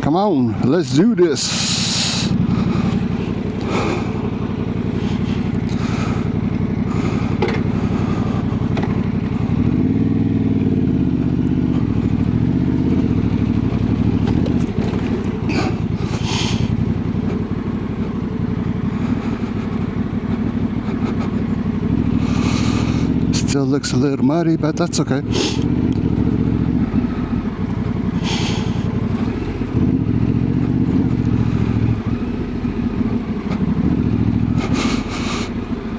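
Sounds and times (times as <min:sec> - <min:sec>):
motorcycle engine revving: 0:00.0 - 0:35.9
short knocks and clatter: 0:07.4 - 0:07.8, 0:14.2 - 0:15.7.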